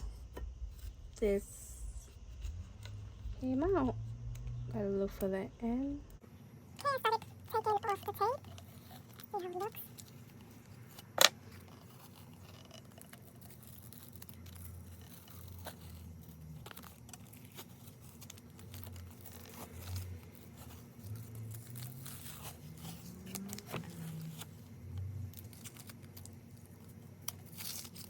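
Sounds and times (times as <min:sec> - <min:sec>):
tape being peeled off: 0:07.0 - 0:28.0.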